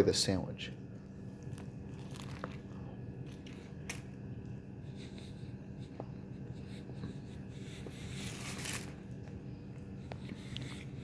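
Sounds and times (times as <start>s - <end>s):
steady low hum: 0.0s - 11.0s
person chewing crispy food: 1.4s - 4.0s.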